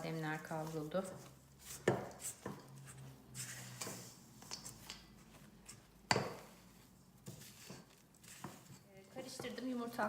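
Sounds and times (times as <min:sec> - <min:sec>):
utensil mixing stiff dough in bowl: 0:00.0 - 0:10.0.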